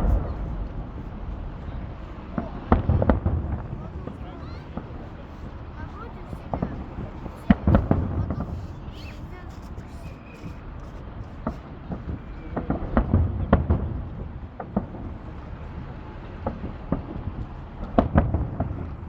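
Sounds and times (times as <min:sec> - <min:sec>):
low rumble: 0:00.0 - 0:05.7
fireworks bangs and pops: 0:00.0 - 0:19.0.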